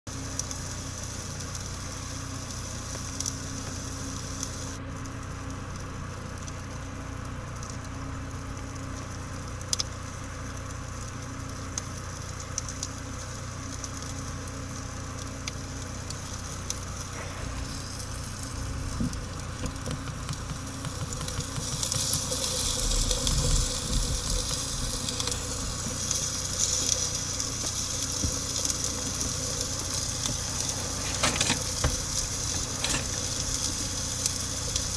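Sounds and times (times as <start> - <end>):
campfire hissing and crackling: 0.1 - 34.9
fire popping: 9.3 - 34.9.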